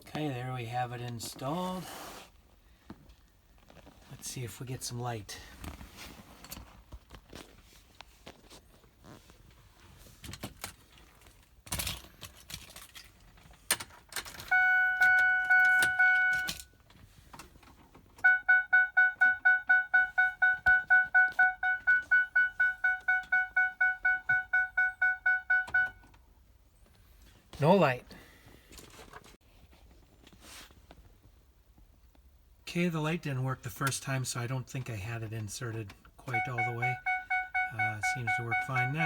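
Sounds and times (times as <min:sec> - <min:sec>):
faint clicks and rustles: 0:02.3 - 0:04.3, 0:05.5 - 0:14.5
dashboard warning chime: 0:14.5 - 0:16.7, 0:18.2 - 0:26.1, 0:36.3 - 0:39.0.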